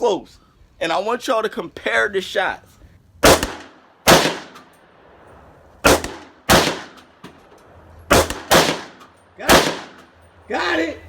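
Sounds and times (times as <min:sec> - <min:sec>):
gunshots: 0:03.2 - 0:04.7, 0:05.8 - 0:07.1, 0:08.1 - 0:10.1.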